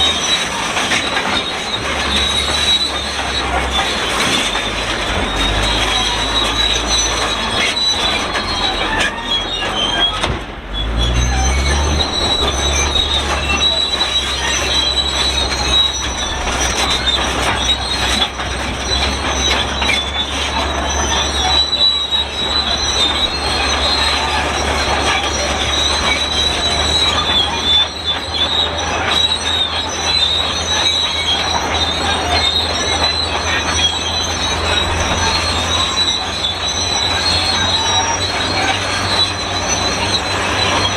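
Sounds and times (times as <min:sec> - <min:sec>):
bulldozer metal squealing: 0:00.0 - 0:40.9
diesel engine running: 0:00.0 - 0:40.9.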